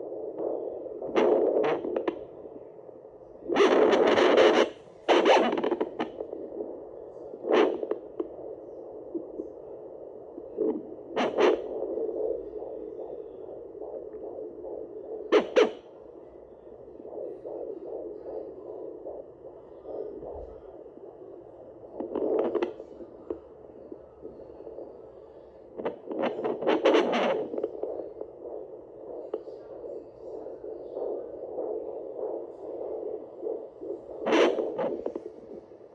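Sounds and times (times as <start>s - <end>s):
loud probe crackles: 3.5s - 6.8s, 25.7s - 35.8s.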